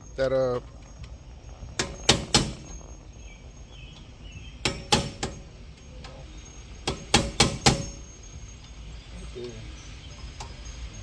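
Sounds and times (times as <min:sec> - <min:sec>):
hammer striking metal hub: 0:01.8 - 0:02.7, 0:04.6 - 0:06.2, 0:06.8 - 0:08.1.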